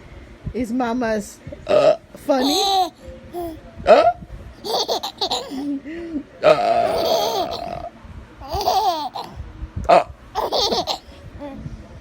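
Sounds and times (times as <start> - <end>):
baby laughing: 2.4 - 3.6, 4.6 - 5.7, 6.8 - 7.8, 8.4 - 9.4, 10.4 - 11.6.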